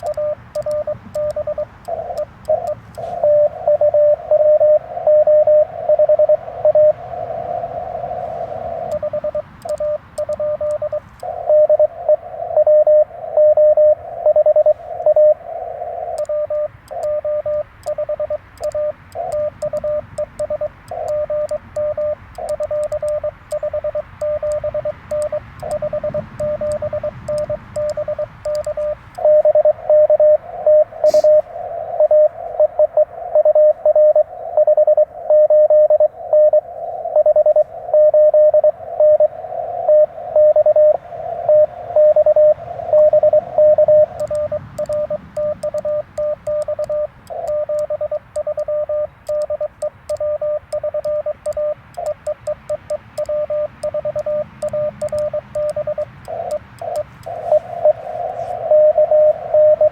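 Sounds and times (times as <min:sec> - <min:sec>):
faint ticks: 0:00.0 - 0:04.0, 0:08.8 - 0:11.6, 0:16.1 - 0:29.4, 0:44.0 - 0:58.5
morse code tone keying: 0:00.0 - 0:07.0, 0:07.6 - 0:59.9
radio band hiss: 0:00.0 - 0:35.3, 0:36.1 - 0:59.9.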